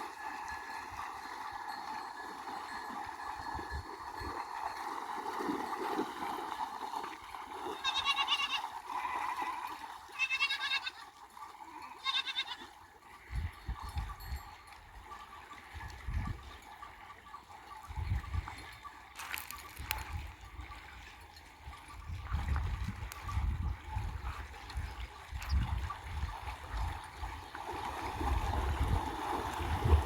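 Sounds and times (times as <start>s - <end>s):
sheep bleating: 7.8s - 11.0s, 11.8s - 12.7s.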